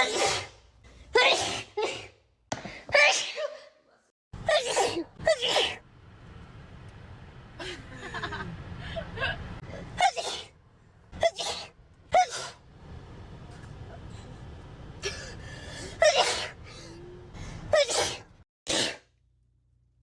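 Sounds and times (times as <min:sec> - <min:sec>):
young women sneezing: 0:00.0 - 0:00.6, 0:01.2 - 0:02.2, 0:02.9 - 0:03.8, 0:04.5 - 0:05.8, 0:11.2 - 0:12.6, 0:16.0 - 0:16.6, 0:17.7 - 0:19.0.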